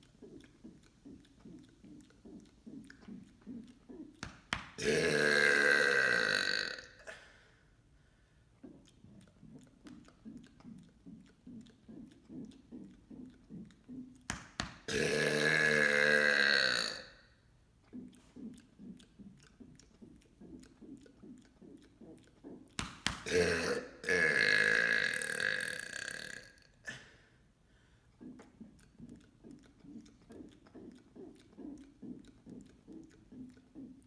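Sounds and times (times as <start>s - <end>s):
man burping loudly: 4.8s - 7.2s, 14.9s - 17.2s, 23.2s - 27.1s.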